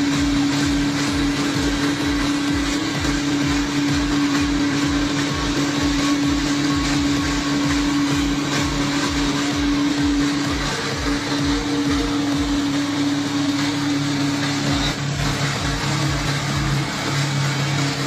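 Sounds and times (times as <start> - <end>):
machine motor humming and pulsing: 0.0 - 18.0.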